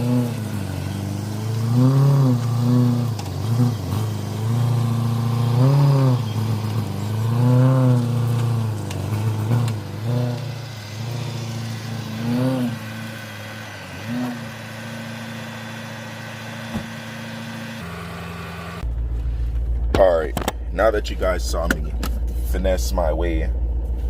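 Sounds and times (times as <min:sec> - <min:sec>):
car engine revving: 0:00.0 - 0:19.5
car engine idling: 0:00.0 - 0:24.0.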